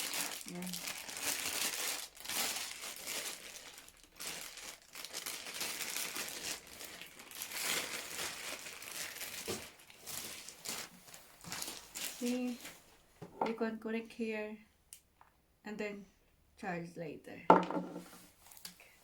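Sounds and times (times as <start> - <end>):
packaging crinkling and rustling: 0.0 - 12.9.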